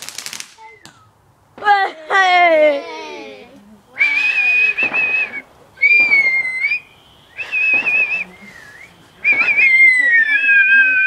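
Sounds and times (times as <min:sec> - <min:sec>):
person whistling: 0:04.0 - 0:06.8, 0:07.4 - 0:11.0.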